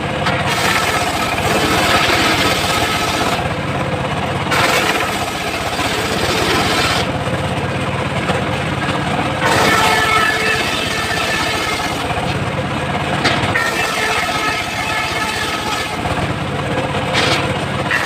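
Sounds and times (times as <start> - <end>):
saw blade cutting log: 0.0 - 3.5, 4.5 - 7.2, 9.4 - 12.4, 13.2 - 16.3, 17.1 - 18.0
sawmill engine running: 0.0 - 18.0.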